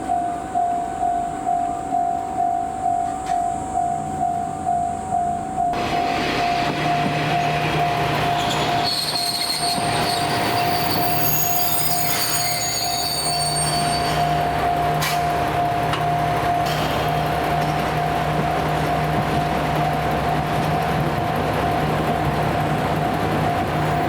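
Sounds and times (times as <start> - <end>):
level crossing alarm ringing: 0.0 - 24.0
train wheels squealing: 2.5 - 19.7.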